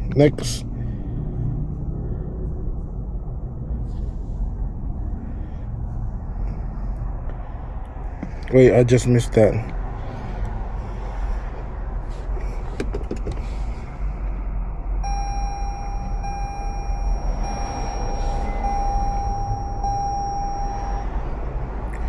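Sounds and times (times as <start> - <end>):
low steady rumble: 0.0 - 22.0
high electronic warning tone: 15.0 - 21.3.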